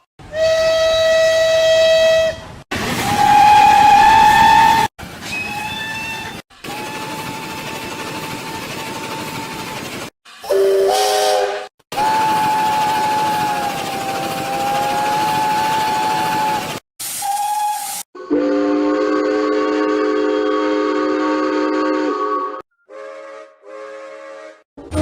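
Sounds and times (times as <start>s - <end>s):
steam locomotive whistles: 0.2s - 25.0s
steam hiss: 8.1s - 18.0s.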